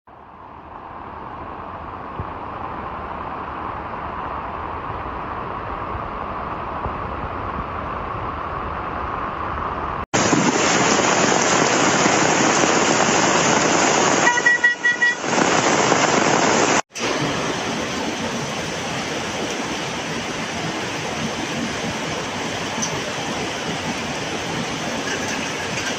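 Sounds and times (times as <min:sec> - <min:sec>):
loud rain: 0:00.2 - 0:25.9
car horn honking: 0:14.2 - 0:15.4.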